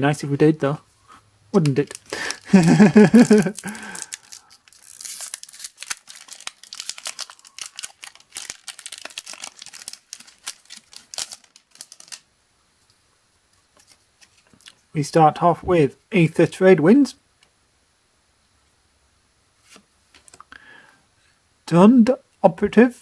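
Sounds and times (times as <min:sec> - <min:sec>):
cards being handled: 0:01.6 - 0:12.2
wrapper crackling and rustling: 0:01.6 - 0:12.3
wrapper tearing: 0:01.6 - 0:12.3.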